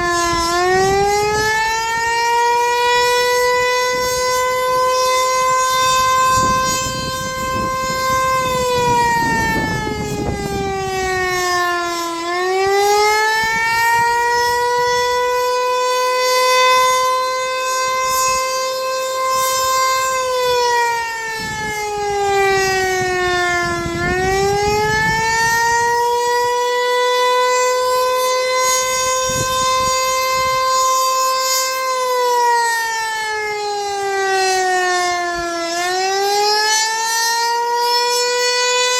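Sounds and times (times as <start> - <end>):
outdoor warning siren: 0.0 - 38.9.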